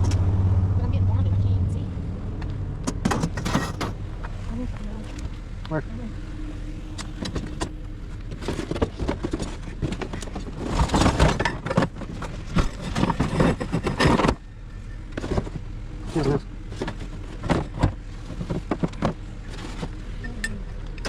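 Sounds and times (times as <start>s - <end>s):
car engine idling: 0.0s - 20.1s
scrap metal clattering: 3.1s - 14.4s.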